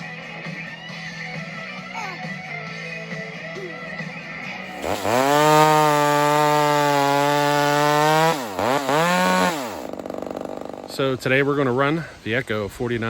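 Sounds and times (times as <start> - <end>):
chainsaw revving and idling: 4.7 - 12.0.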